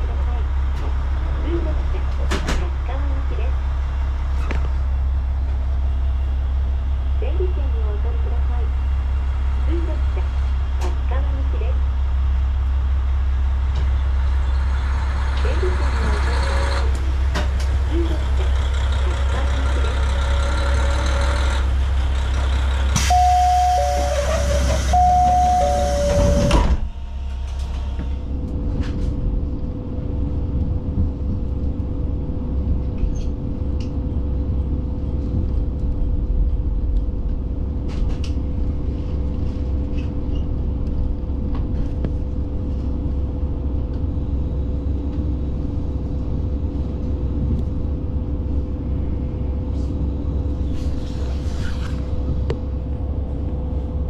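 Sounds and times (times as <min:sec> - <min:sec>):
diesel engine idling: 0:00.0 - 0:27.4
diesel railcar running: 0:00.0 - 0:54.0.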